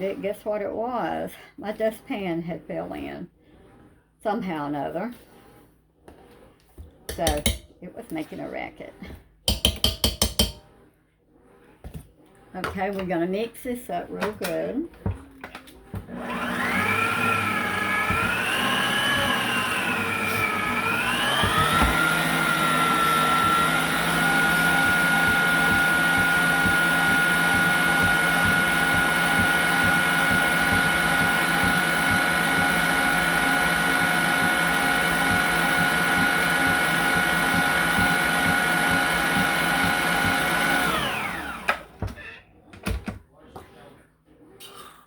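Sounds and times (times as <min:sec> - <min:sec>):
electric mixer whining: 0:15.9 - 0:42.1.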